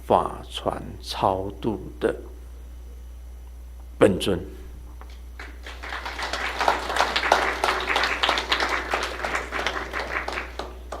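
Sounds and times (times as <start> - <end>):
audience applauding: 5.4 - 11.0.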